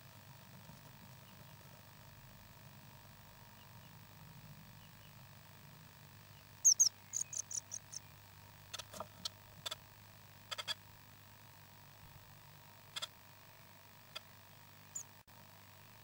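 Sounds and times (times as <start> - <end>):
baby birds chirping: 6.4 - 8.2.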